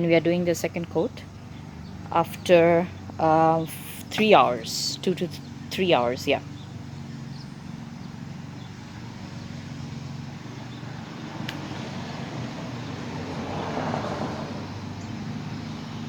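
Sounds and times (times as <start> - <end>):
steady low hum: 0.0 - 16.0
car passing by: 6.4 - 16.0.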